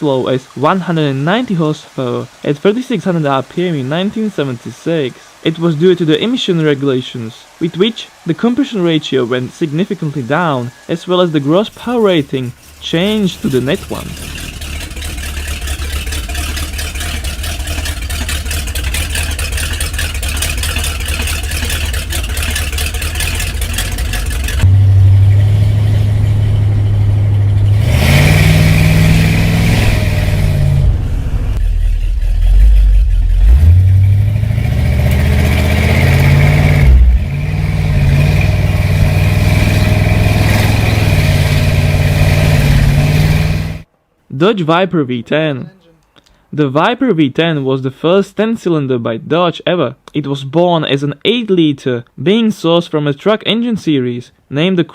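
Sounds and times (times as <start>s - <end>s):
car engine running and revving: 11.8s - 43.9s.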